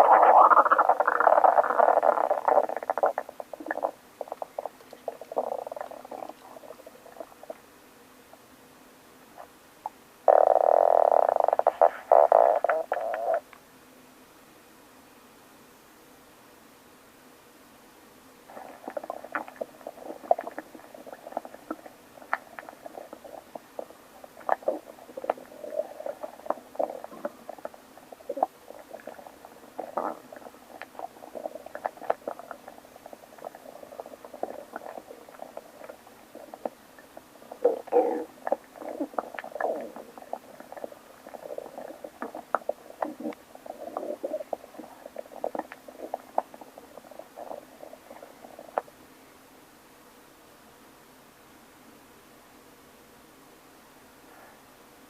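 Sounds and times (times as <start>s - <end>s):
stomach growling and gurgling: 0.0s - 7.6s, 10.3s - 13.5s, 18.5s - 48.9s.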